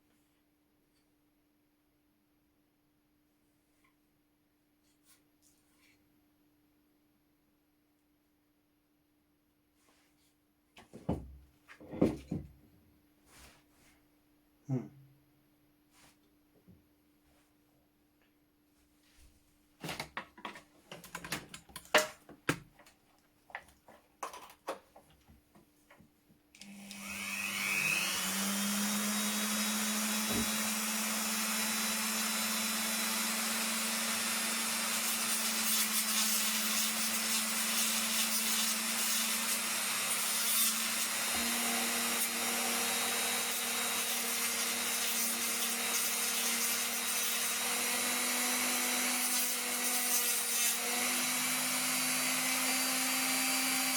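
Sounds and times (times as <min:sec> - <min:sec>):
power tool whining: 0:26.6 - 0:53.9.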